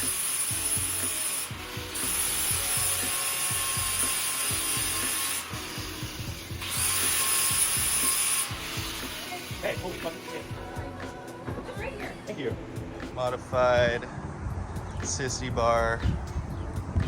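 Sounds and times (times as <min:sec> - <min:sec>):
grinder grinding metal: 0:00.0 - 0:10.8
background music with steady beat: 0:00.0 - 0:17.0.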